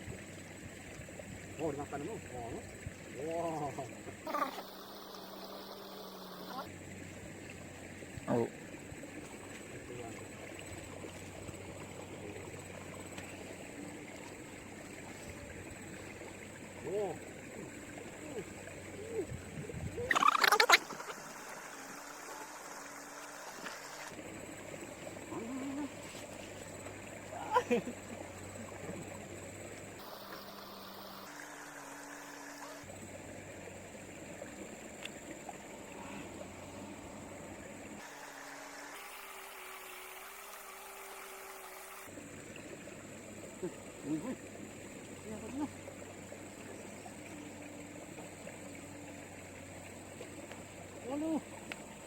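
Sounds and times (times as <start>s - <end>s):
faint hum: 0.0s - 52.0s
river water: 0.0s - 52.0s.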